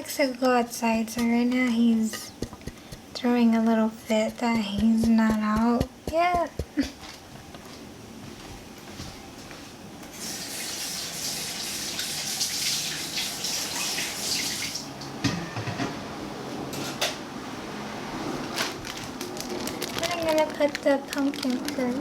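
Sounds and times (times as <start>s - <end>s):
water running from a tap: 10.2s - 14.8s.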